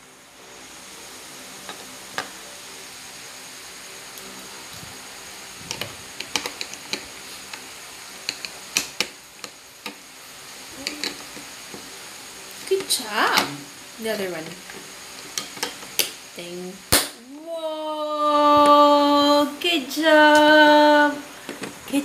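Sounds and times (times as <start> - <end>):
faint room hum: 0.0 - 22.0.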